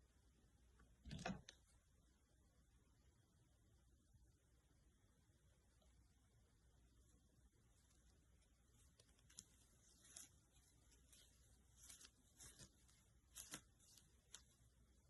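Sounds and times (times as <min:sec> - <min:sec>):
cat rustling and scratching: 0:06.9 - 0:15.0.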